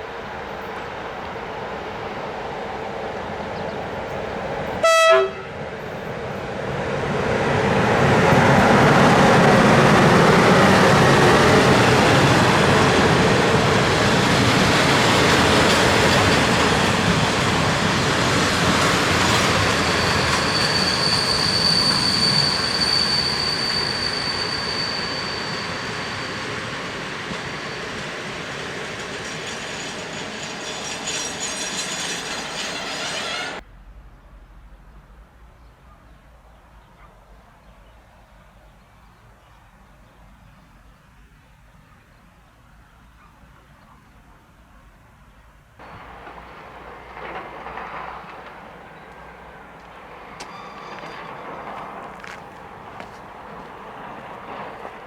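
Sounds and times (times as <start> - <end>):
train rumbling past: 0.0 - 35.5, 45.8 - 55.0
train horn blast: 4.8 - 5.6
wheel squeal: 19.2 - 28.1, 29.1 - 33.6, 45.8 - 55.0.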